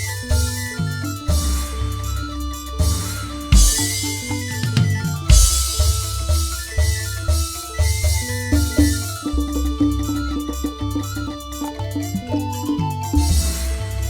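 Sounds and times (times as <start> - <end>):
live band music: 0.0 - 14.0
cymbal crash hits: 2.8 - 6.7.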